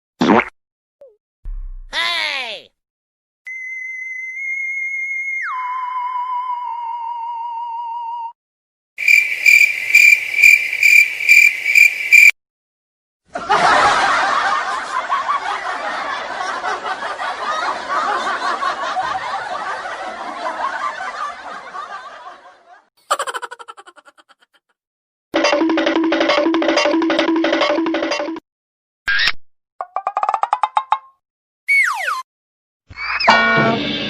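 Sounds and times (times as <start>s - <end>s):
many voices laughing: 13.3s - 24.7s.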